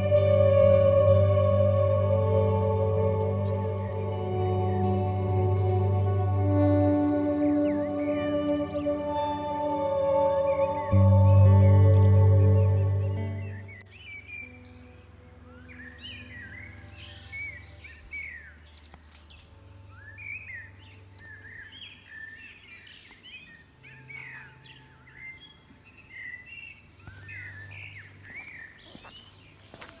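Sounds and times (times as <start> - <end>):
faint low hum: 0.0 - 30.0
many birds chirping: 3.5 - 30.0.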